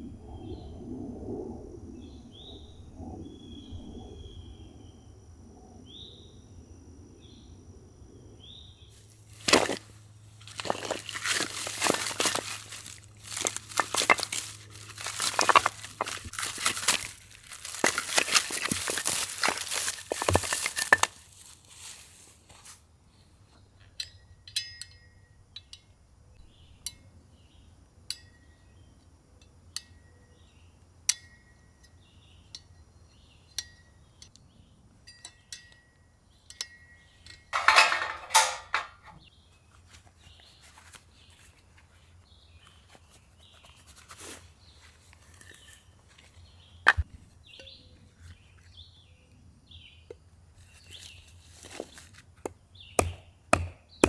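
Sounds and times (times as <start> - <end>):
rustle: 8.9 - 24.1, 37.2 - 52.5
cookware and utensils clinking: 37.5 - 39.2.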